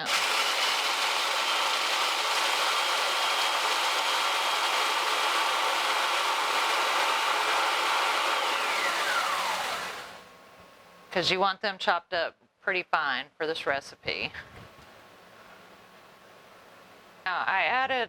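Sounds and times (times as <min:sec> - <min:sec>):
food processor chopping crackers: 0:00.0 - 0:10.3.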